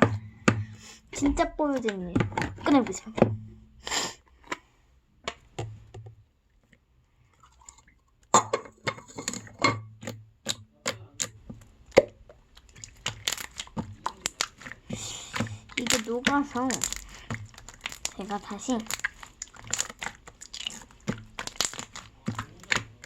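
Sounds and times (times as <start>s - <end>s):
plastic wrapping crackling: 11.6s - 23.0s.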